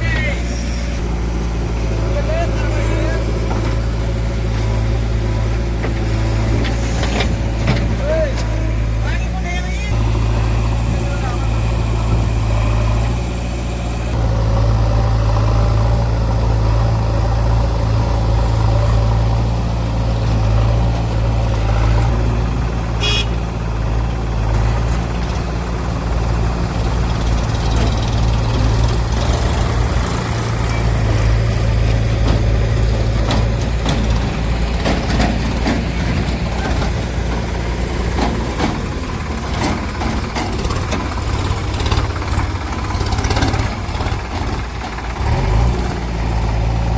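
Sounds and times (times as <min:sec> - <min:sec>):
diesel engine running: 0:00.0 - 0:46.9
knocks and rattles: 0:24.4 - 0:46.6.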